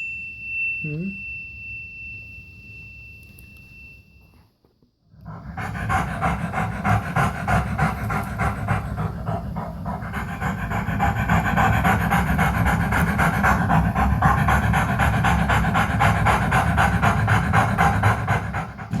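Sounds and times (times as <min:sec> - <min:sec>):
dog panting: 0:05.2 - 0:19.0.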